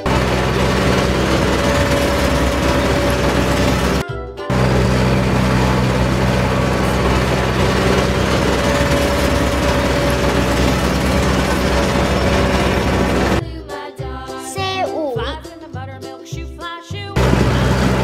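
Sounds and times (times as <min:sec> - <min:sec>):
loud rushing noise: 0:00.0 - 0:13.4
vehicle engine running steadily: 0:00.0 - 0:13.4, 0:17.2 - 0:18.0.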